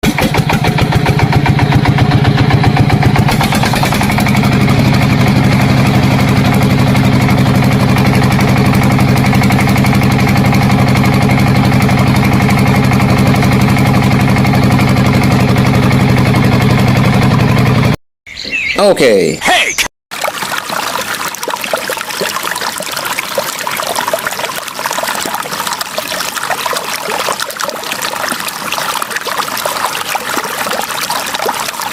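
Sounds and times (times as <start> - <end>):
engine idling: 0.0 - 18.0.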